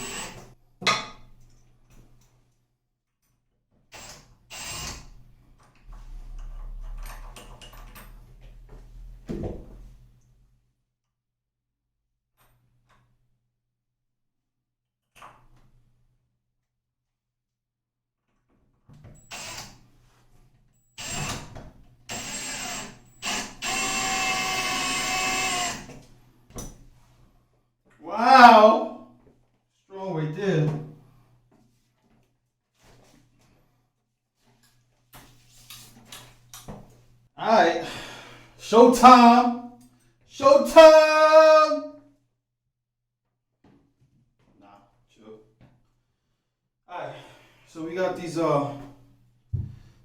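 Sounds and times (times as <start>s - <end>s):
power drill driving screws: 0.0s - 0.5s, 3.9s - 5.2s, 19.2s - 19.8s, 21.0s - 26.0s
low steady hum: 5.9s - 9.3s.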